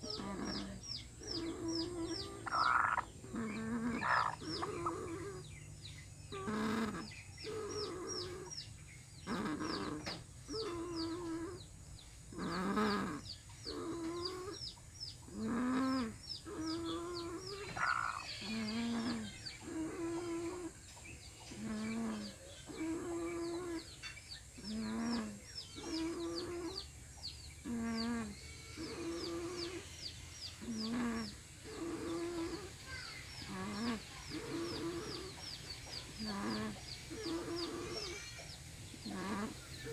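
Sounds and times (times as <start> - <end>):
chicken snore-like call: 0.0 - 5.5, 6.3 - 8.5, 9.2 - 11.6, 12.4 - 14.6, 15.3 - 20.8, 21.5 - 24.0, 24.6 - 26.9, 27.6 - 39.9
rapid high chirps: 2.0 - 3.1.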